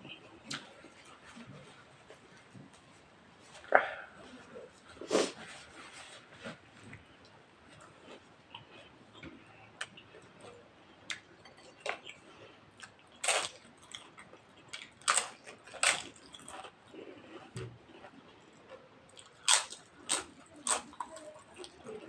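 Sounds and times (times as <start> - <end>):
crunchy bites: 13.1 - 16.8, 19.2 - 21.1.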